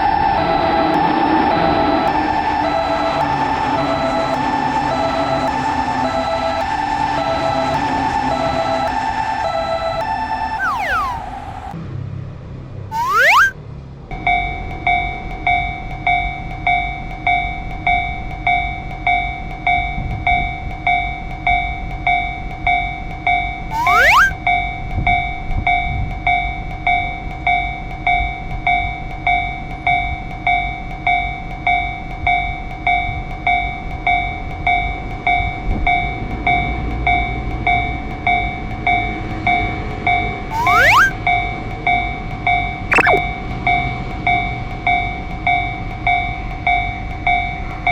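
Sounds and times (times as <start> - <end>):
low rumble of train: 0.0 - 10.6
level-crossing warning bell ringing: 0.0 - 11.7
whistle-like sweeps: 0.0 - 11.8, 12.9 - 13.6, 23.7 - 24.4, 40.5 - 41.2, 42.9 - 43.2.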